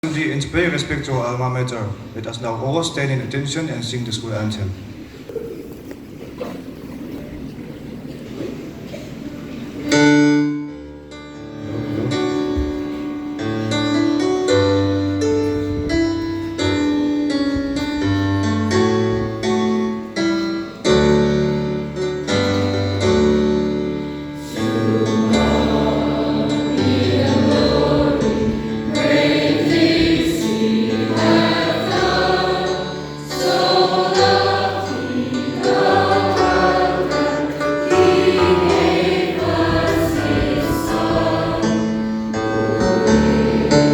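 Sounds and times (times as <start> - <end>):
group of voices singing: 24.4 - 43.9.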